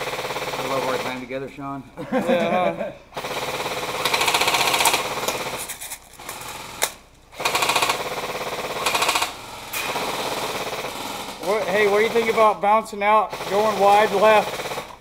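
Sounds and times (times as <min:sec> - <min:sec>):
airsoft gun firing bursts: 0:00.0 - 0:01.2, 0:03.2 - 0:05.6, 0:06.4 - 0:12.6, 0:13.3 - 0:15.0.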